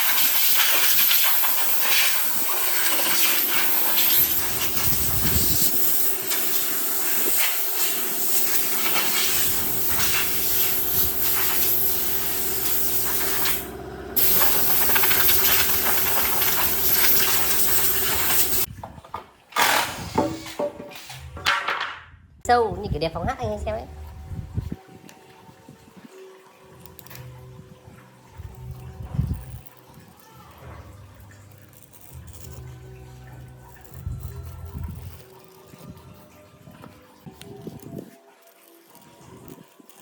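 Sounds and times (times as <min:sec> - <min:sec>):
machine running with loud hiss: 0:00.0 - 0:18.7
steady machine hum: 0:03.8 - 0:18.7.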